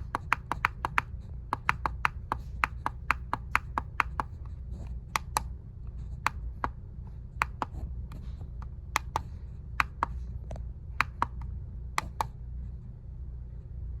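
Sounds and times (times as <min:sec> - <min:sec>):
alarm clock buttons clicking: 0:00.0 - 0:04.4, 0:05.2 - 0:05.5, 0:07.4 - 0:07.8, 0:09.0 - 0:10.2, 0:11.0 - 0:11.4, 0:12.0 - 0:12.3
steady low hum: 0:00.0 - 0:14.0.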